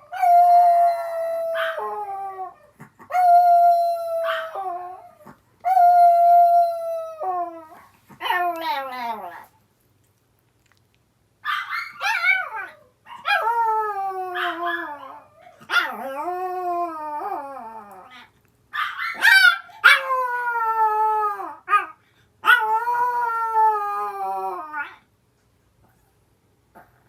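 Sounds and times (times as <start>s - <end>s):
dog howling: 0.0s - 9.3s
dog barking: 11.4s - 12.4s, 18.8s - 20.0s
small dog yipping: 11.4s - 13.5s, 18.8s - 20.1s.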